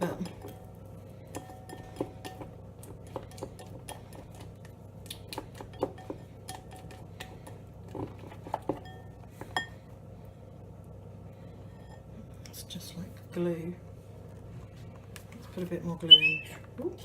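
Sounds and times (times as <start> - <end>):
utensil stirring slime in bowl: 0.0 - 9.8
low steady hum: 0.0 - 17.0
utensil clinking against bowl: 1.3 - 4.4.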